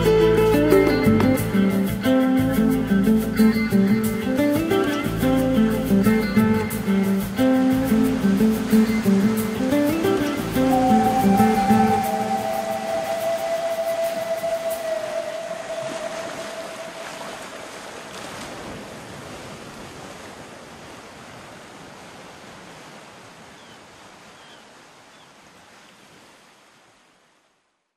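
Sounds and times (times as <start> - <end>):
even rushing noise: 6.8 - 18.1
held musical note: 7.7 - 17.5.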